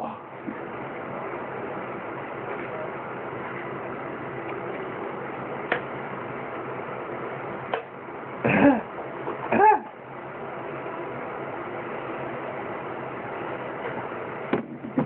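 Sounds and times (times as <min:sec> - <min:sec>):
man burping: 0:08.4 - 0:08.9, 0:09.5 - 0:09.9.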